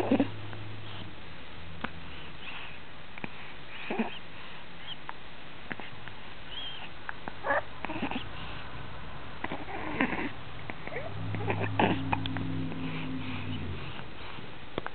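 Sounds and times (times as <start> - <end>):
small whimpering vocal sounds: 0.0 - 0.4, 2.5 - 5.0, 5.7 - 8.6, 9.4 - 14.4
steady low hum: 0.0 - 14.9.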